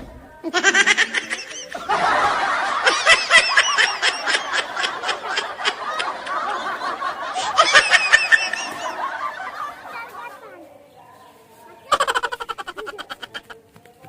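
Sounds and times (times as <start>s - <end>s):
high-pitched snickering laughter: 0.5s - 10.5s, 11.9s - 13.6s.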